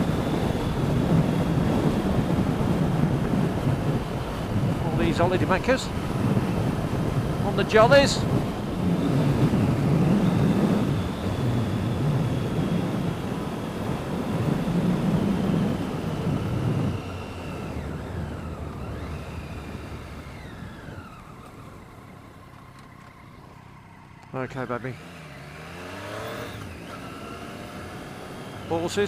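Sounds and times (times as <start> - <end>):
wind rush: 0.0 - 21.9
motorcycle engine: 0.0 - 29.0.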